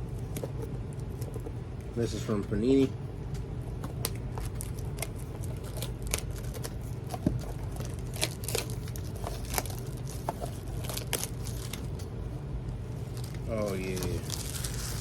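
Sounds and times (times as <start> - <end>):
steady low hum: 0.0 - 15.0
plastic wrapping crinkling and tearing: 4.0 - 12.0, 13.0 - 15.0.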